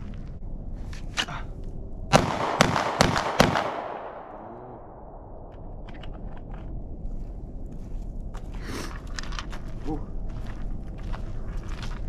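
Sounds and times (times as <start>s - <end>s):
pistol shots echoing: 2.1s - 5.0s.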